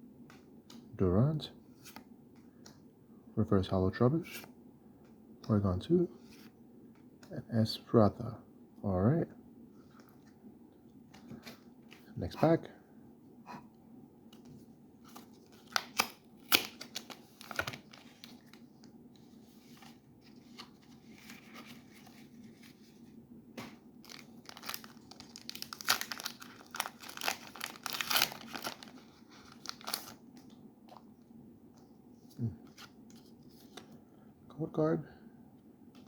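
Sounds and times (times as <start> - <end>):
foil wrapper tearing and crinkling: 24.0 - 30.2.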